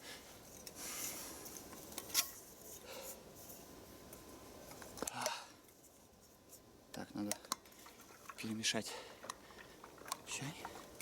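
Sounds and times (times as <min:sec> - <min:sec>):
soft rustling and handling: 0:00.0 - 0:06.7.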